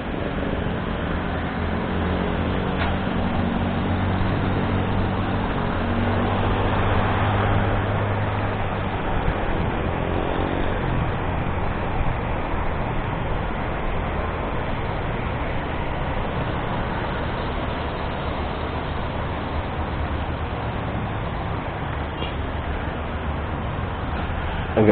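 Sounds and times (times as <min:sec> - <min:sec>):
road noise: 0:00.0 - 0:24.9.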